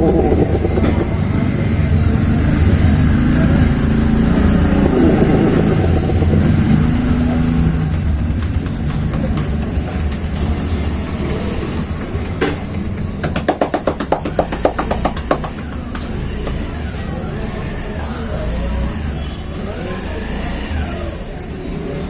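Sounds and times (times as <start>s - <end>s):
hands slapping in massage: 13.2s - 16.0s.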